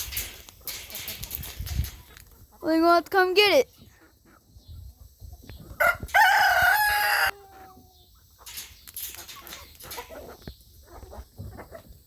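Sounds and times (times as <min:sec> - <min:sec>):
rooster crowing: 0:05.8 - 0:07.5.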